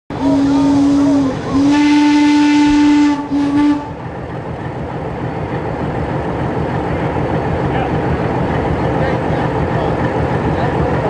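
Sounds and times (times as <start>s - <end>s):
locomotive air horn blasts: 0.1s - 4.0s
steady engine rumble: 0.1s - 11.0s.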